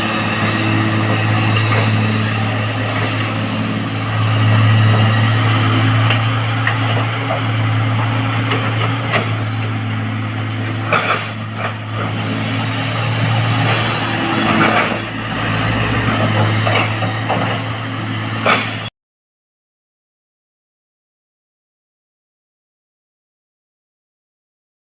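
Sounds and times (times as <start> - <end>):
heavy diesel engine running: 0.0 - 18.9.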